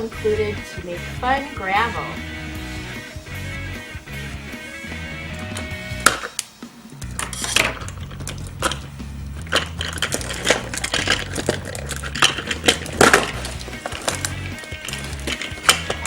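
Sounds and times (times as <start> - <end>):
background music: 0.0 - 16.0
plastic toy pieces clicking: 9.4 - 16.0.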